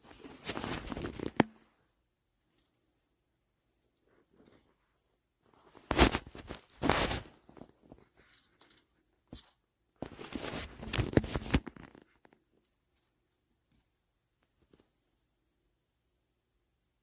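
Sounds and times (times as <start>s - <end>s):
rustling crackling handling noise: 0.0s - 1.8s, 3.9s - 14.9s.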